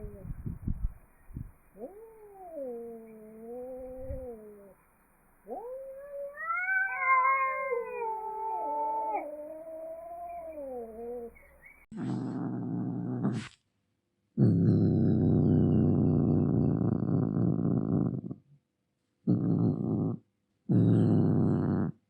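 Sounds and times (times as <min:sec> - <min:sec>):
cat low rough rumble: 0:00.0 - 0:04.8, 0:05.4 - 0:13.5, 0:14.4 - 0:18.5, 0:19.3 - 0:22.0
cat yowling: 0:05.5 - 0:11.4.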